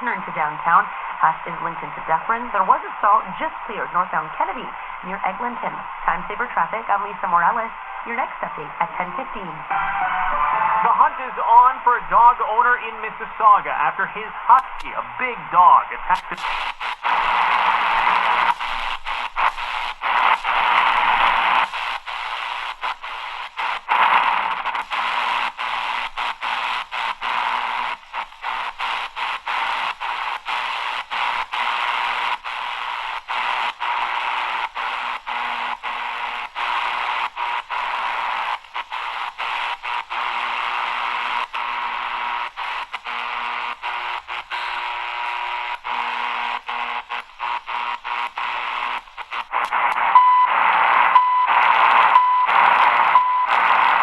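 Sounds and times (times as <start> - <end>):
radio static hiss: 0.0 - 54.0.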